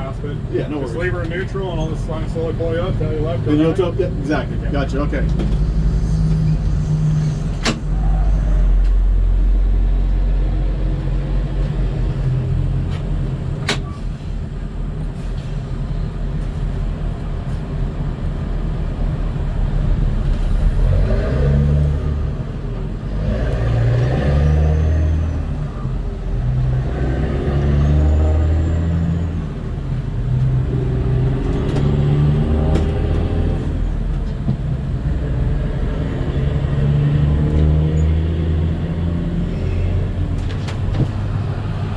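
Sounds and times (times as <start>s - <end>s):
tow truck engine running: 37.6s - 41.9s.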